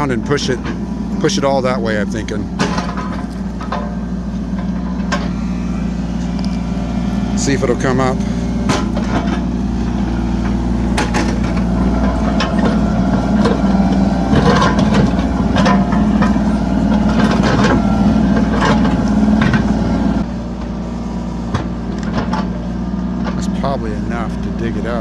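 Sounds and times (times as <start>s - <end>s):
diesel engine under load: 0.0s - 25.0s
excavator bucket knocks and clunks: 2.5s - 5.5s, 8.6s - 20.0s.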